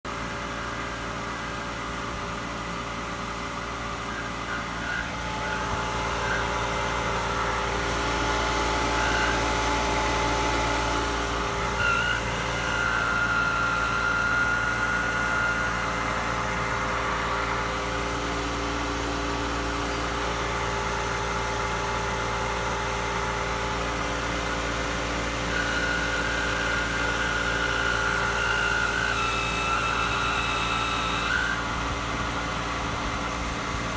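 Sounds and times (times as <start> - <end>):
pool pump humming and grinding: 0.0 - 33.9
thin high whine: 3.0 - 16.8.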